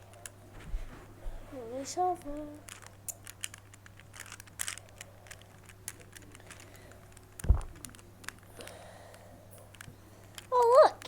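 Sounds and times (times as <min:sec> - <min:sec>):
plastic puzzle pieces clicking: 0:01.9 - 0:11.0
dull thump: 0:07.4 - 0:07.9.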